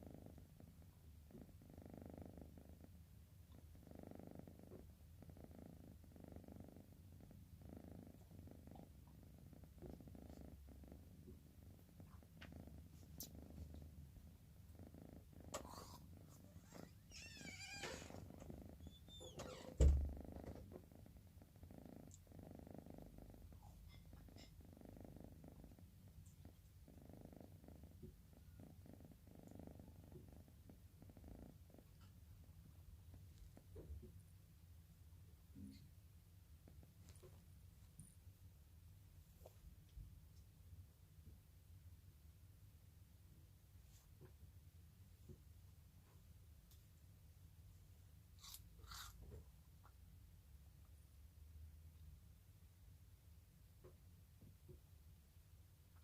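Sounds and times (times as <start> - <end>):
cat snoring: 0.0 - 2.9, 3.7 - 13.8, 14.7 - 32.1, 48.4 - 49.4.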